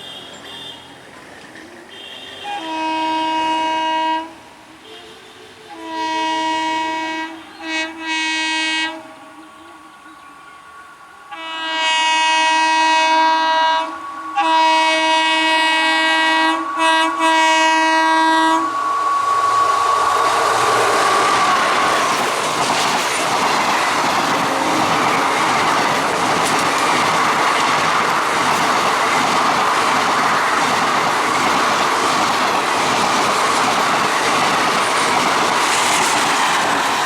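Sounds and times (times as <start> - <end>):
approaching train rushing: 0.9 - 37.0
train air horn blasts: 1.9 - 22.2, 24.3 - 26.6.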